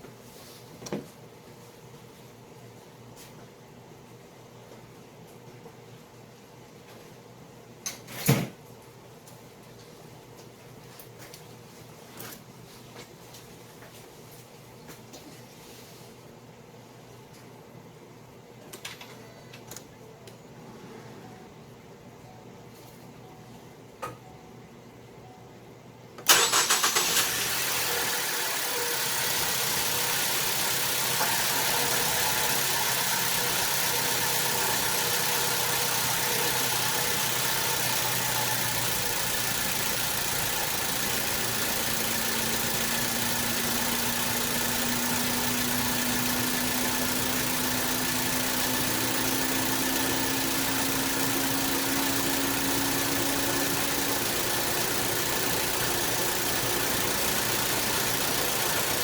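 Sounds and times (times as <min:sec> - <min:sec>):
car engine idling: 0:26.3 - 0:59.0.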